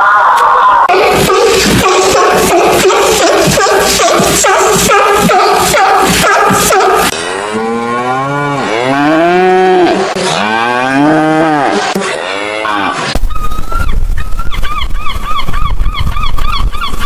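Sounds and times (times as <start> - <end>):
cow mooing: 7.0 - 13.2.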